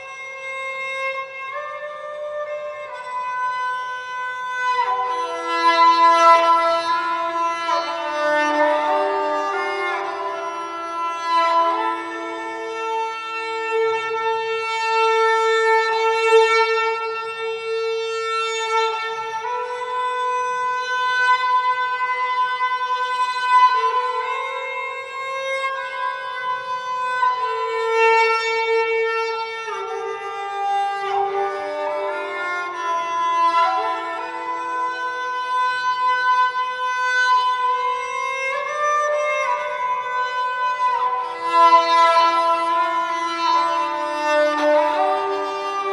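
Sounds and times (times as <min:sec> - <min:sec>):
bowed string instrument: 0:00.0 - 0:45.9.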